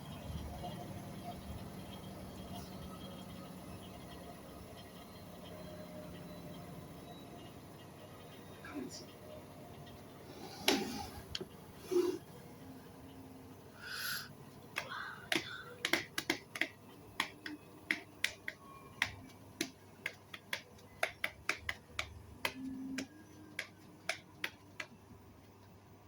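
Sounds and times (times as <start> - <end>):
sharp clicks and taps: 14.7 - 25.7.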